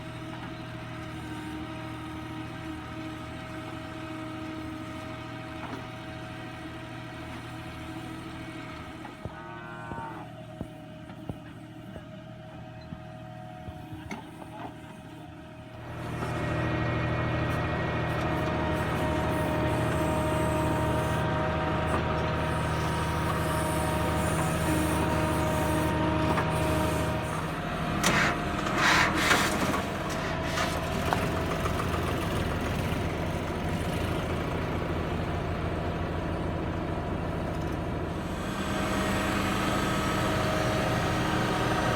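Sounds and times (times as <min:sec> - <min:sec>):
tractor diesel engine running: 0:10.4 - 0:41.9.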